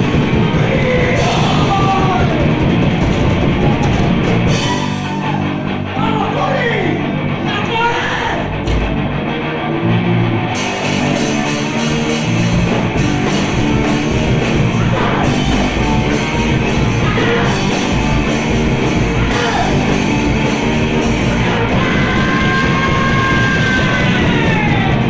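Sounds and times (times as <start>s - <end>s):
distorted electric guitars: 0.0s - 25.0s
drums: 0.0s - 25.0s
person singing: 0.4s - 2.7s, 14.7s - 18.4s, 19.1s - 25.0s.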